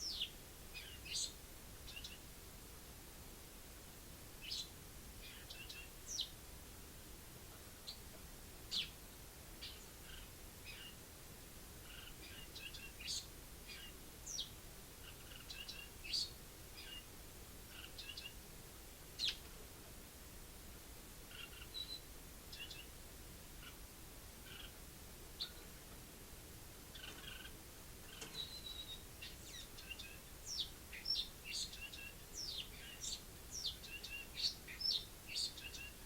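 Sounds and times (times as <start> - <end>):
sparrow chirping: 0.0 - 2.3, 4.4 - 6.4, 7.8 - 8.1, 8.7 - 9.0, 9.6 - 11.0, 11.8 - 17.1, 17.7 - 18.4, 19.2 - 19.4, 21.3 - 22.9, 25.4 - 25.7, 26.9 - 36.0
faint steady hiss: 0.0 - 36.0.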